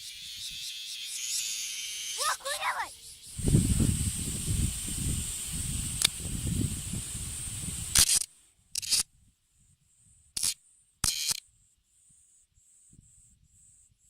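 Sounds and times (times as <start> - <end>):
faint pulsing cicada call: 0.0 - 8.0, 8.8 - 14.0
cicada harsh distress buzzes: 0.0 - 9.0
high cicada buzz: 0.0 - 9.0.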